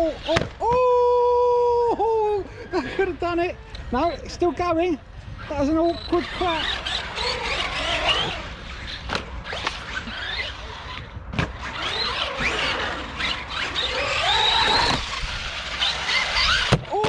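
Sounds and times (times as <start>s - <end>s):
electric motor whining: 5.3s - 16.9s.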